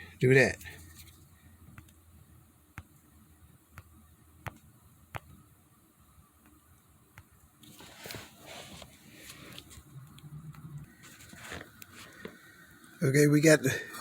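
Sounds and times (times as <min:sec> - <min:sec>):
rustling and scraping: 0:07.6 - 0:12.4.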